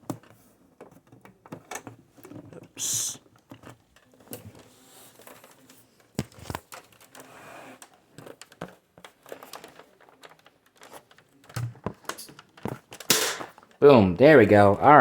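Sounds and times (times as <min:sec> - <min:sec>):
plastic cover clicks and knocks: 0:06.1 - 0:07.0, 0:08.2 - 0:13.8.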